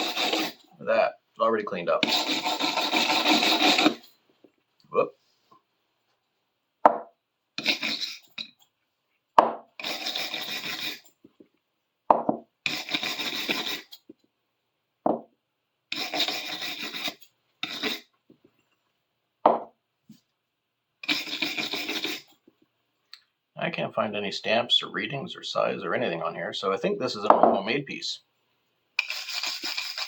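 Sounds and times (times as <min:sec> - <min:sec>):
rubbing strokes on metal tool: 0:00.0 - 0:00.6, 0:02.0 - 0:04.1, 0:09.8 - 0:11.1, 0:12.7 - 0:14.0, 0:15.9 - 0:18.1, 0:21.0 - 0:22.3, 0:29.0 - 0:30.0.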